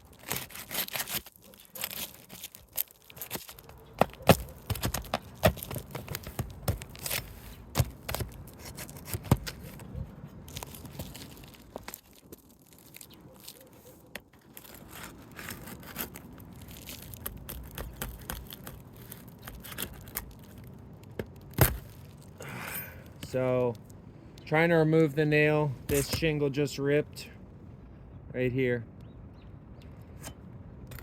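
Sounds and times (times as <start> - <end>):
shingles crackling: 0.0 - 24.0.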